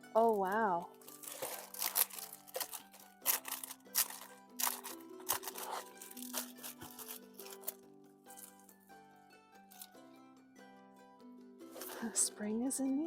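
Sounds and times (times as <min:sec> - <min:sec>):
soft harp and guitar music: 0:00.0 - 0:13.0
paper crinkling and rustling: 0:00.2 - 0:07.8, 0:11.8 - 0:12.1.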